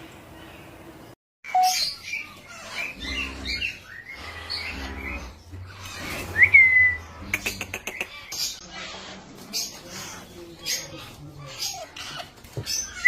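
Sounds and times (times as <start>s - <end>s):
bird chirping and whistling: 1.5s - 7.1s.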